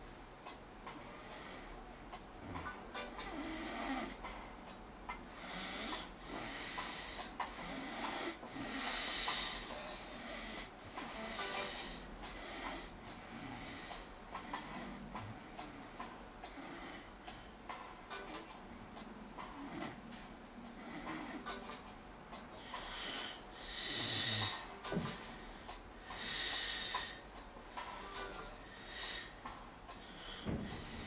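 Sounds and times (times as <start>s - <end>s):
loud hissy breaths: 5.3s - 18.2s, 22.6s - 31.0s.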